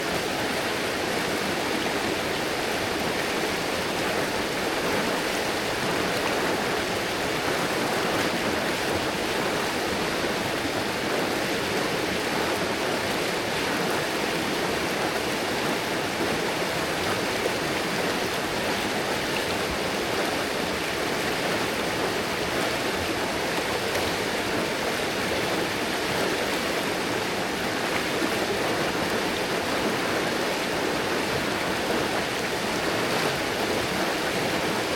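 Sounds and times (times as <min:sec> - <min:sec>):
river water rushing over rocks: 0:00.0 - 0:34.9.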